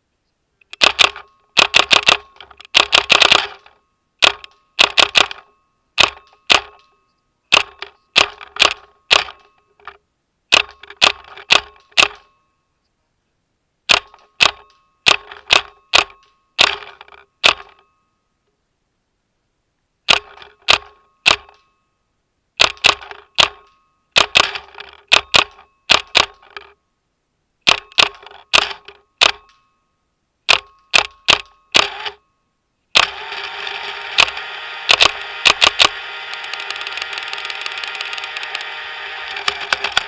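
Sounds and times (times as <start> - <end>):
steady ringing tone: 15.7 - 18.4, 30.6 - 40.0
paintball marker firing: 34.2 - 38.6.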